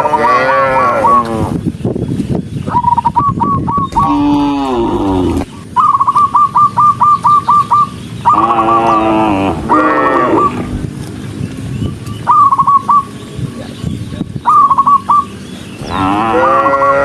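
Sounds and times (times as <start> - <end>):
cows mooing: 0.0 - 1.6, 3.9 - 5.5, 8.3 - 10.7, 15.8 - 17.0.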